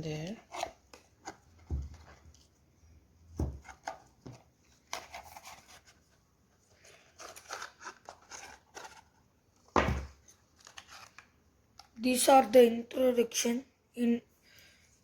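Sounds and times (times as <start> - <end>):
paper and cardboard rustling: 3.4 - 11.3.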